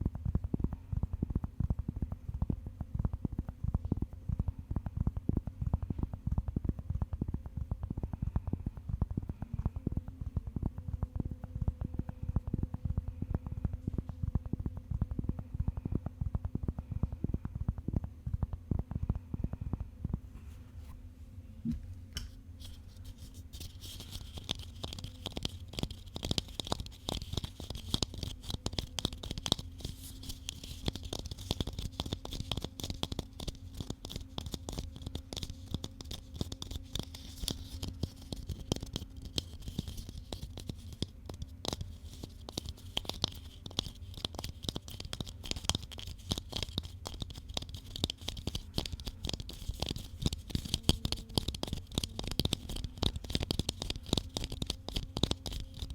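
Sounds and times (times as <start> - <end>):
rapid dense tapping: 22.6 - 55.9.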